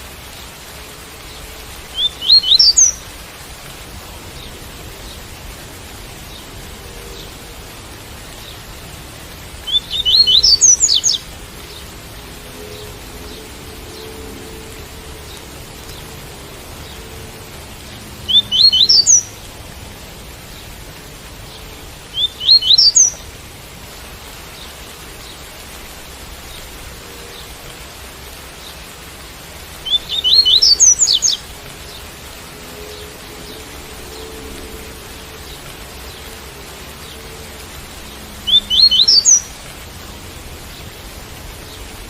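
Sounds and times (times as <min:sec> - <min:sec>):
rain hiss: 0:00.0 - 0:42.0
bird singing rising notes: 0:01.9 - 0:03.0, 0:09.6 - 0:11.8, 0:18.3 - 0:19.3, 0:22.1 - 0:23.2, 0:29.8 - 0:32.0, 0:38.4 - 0:39.6.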